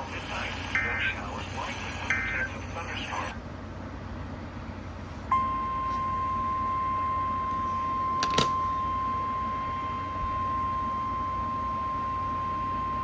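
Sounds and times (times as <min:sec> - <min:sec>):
steady alarm tone: 0:05.3 - 0:13.0.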